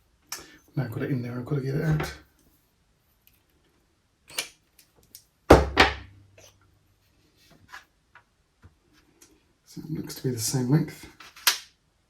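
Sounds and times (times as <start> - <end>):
light clicks of small parts: 4.3 - 5.3.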